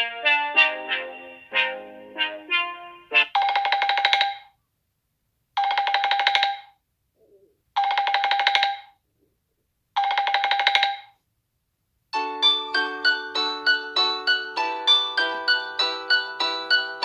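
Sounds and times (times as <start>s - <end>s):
telephone bell ringtone: 3.2s - 4.5s, 5.6s - 6.7s, 7.8s - 9.0s, 10.0s - 11.2s, 12.2s - 17.0s.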